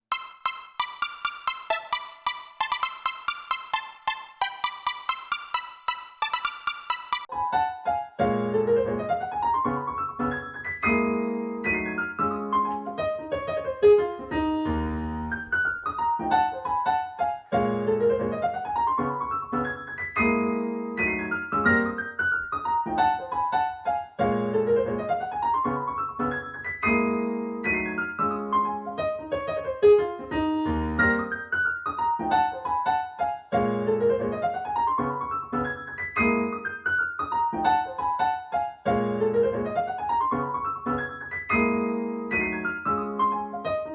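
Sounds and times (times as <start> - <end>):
piano music through speakers: 0.0 - 43.9.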